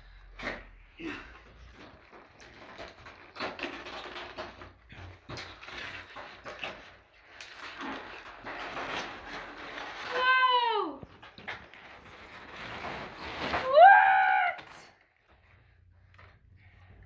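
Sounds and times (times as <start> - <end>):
packaging rustling and tearing: 1.6 - 4.8, 5.4 - 10.3, 11.0 - 14.8.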